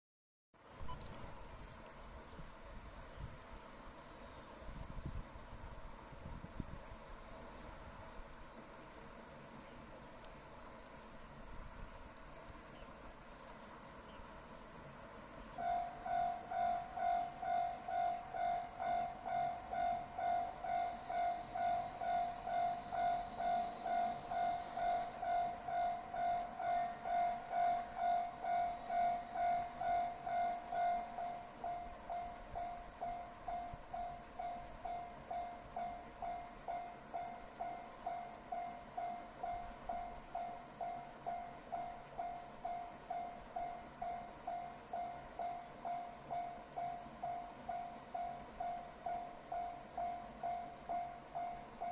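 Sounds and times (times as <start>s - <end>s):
level crossing alarm dinging: 15.6s - 51.9s.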